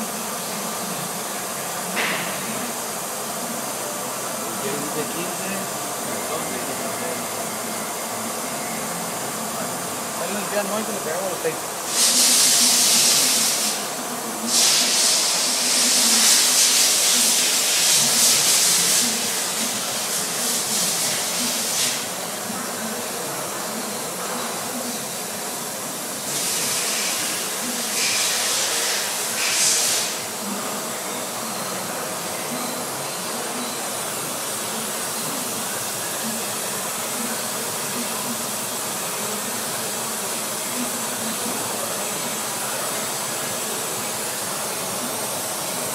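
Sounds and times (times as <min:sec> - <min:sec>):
steady background noise: 0:00.0 - 0:45.9
loud high hissing: 0:10.2 - 0:22.1.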